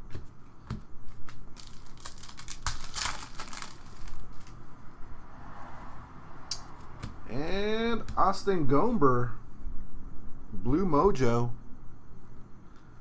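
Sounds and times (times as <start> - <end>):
trading cards and foil packs crinkling: 0.6 - 4.6.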